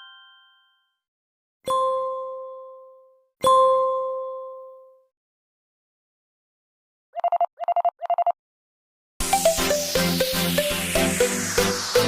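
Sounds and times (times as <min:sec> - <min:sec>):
bell-like ding: 0:00.0 - 0:01.0.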